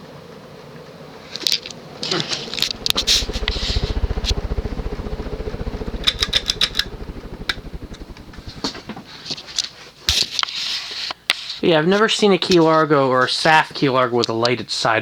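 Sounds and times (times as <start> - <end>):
ceiling fan blades pulsing: 0.1 - 9.4
fan motor hum: 1.7 - 9.4.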